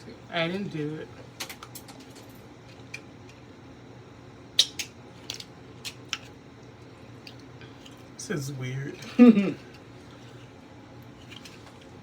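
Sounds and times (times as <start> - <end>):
sharp clicks and smacks: 4.6 - 5.0.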